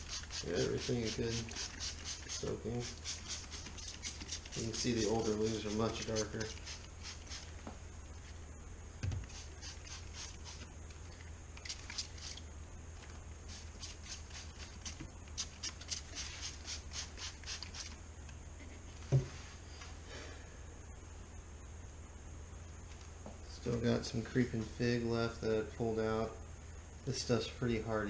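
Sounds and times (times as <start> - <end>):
spray bottle spritzes: 0.0 - 7.5, 9.2 - 10.6, 13.5 - 18.0.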